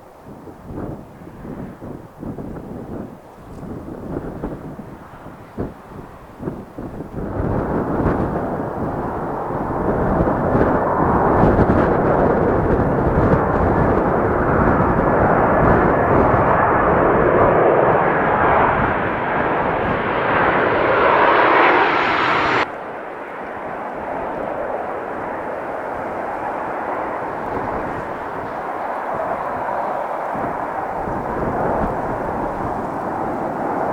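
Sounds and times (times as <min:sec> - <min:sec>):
aircraft engine noise: 0:00.0 - 0:33.9
thin whine: 0:07.8 - 0:33.9.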